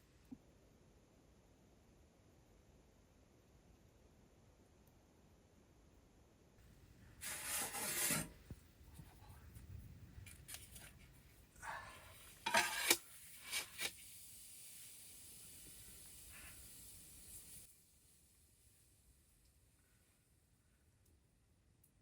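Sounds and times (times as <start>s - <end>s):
faint steady hiss: 0.0s - 22.0s
spatula scraping in a pan: 7.2s - 8.4s, 12.3s - 14.2s.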